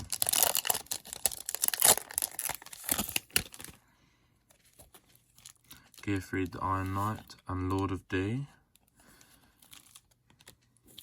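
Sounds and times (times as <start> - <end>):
foil wrapper tearing and crinkling: 0.0 - 3.8, 9.2 - 11.0.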